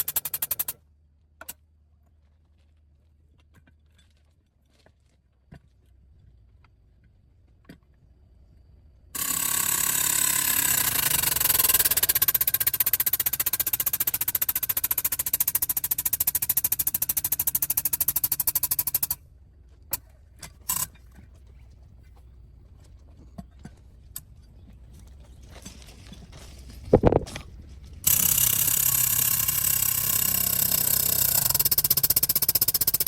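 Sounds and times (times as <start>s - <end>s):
power tool hammering: 0.0s - 0.8s, 9.2s - 19.2s, 28.0s - 33.0s.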